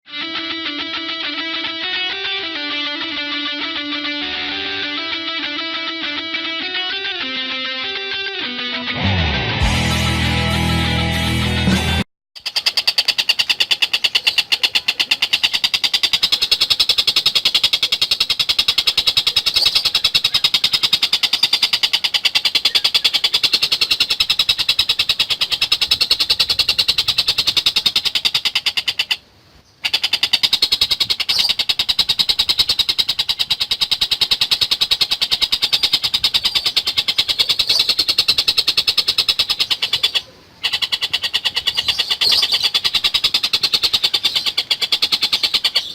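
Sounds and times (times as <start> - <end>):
kingfisher rattling chatter: 12.4 - 29.2, 29.9 - 45.9.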